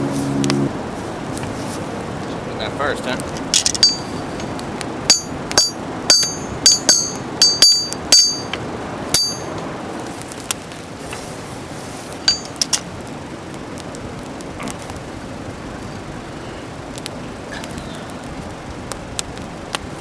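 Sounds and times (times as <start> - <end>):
hammer striking steel on anvil: 3.8 - 4.5, 5.1 - 8.6, 9.2 - 9.6, 12.3 - 12.7.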